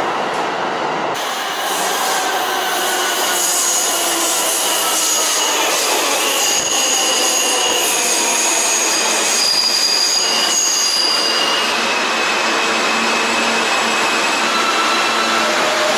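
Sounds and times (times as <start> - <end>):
train rushing noise: 0.0 - 15.9
train wheels squealing on rails: 1.2 - 15.9.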